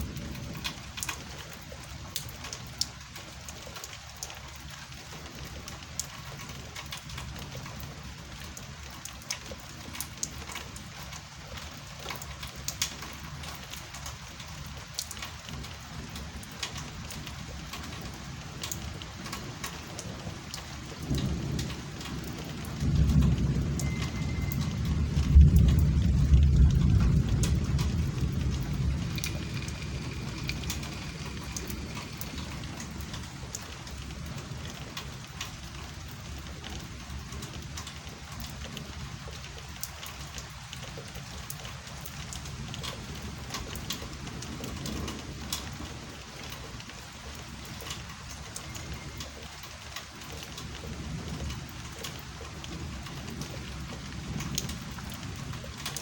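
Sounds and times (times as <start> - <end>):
rain falling: 0.0 - 56.0
raindrops ticking: 0.0 - 56.0
low thunder roll: 20.2 - 37.7.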